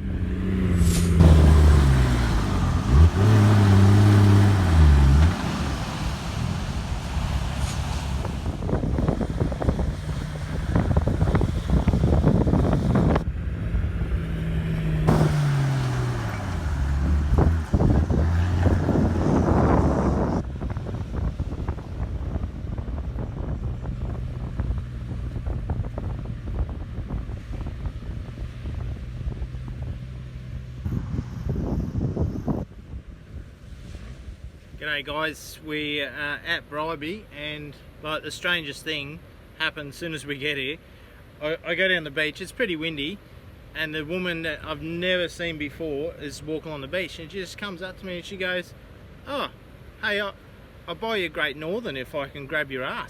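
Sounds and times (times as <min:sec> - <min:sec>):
vehicle engine running: 0:00.0 - 0:32.5
wind buffeting microphone: 0:00.0 - 0:34.8.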